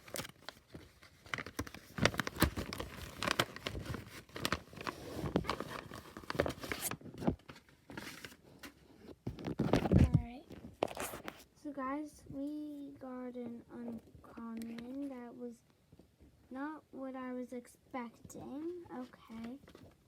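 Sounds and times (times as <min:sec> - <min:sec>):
plastic packet crinkling and tearing: 0:00.0 - 0:08.6, 0:09.4 - 0:11.4.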